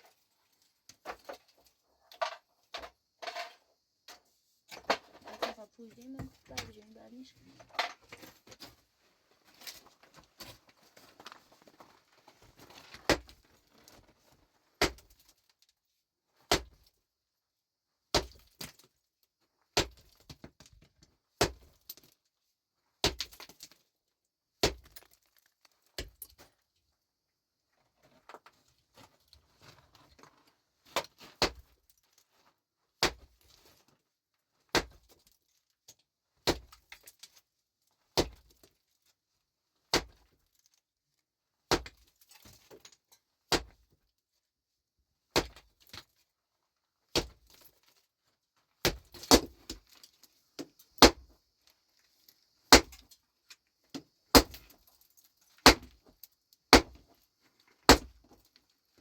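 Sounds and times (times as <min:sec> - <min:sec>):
hammer striking rock: 0:51.0 - 0:51.2, 0:52.7 - 0:53.0, 0:55.7 - 0:56.0, 0:56.8 - 0:57.0, 0:57.9 - 0:58.2.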